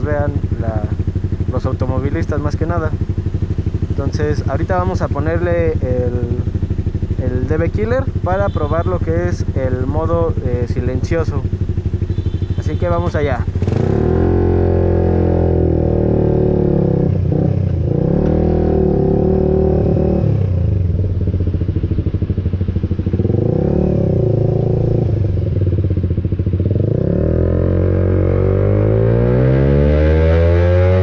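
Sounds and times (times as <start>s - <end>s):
motorcycle engine revving: 0.0s - 31.0s.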